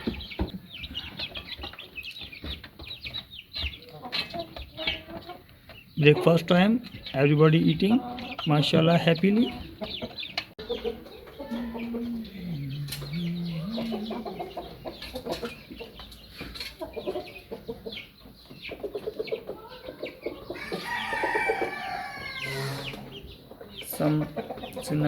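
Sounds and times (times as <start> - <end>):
chickens clucking: 0.0 - 25.0.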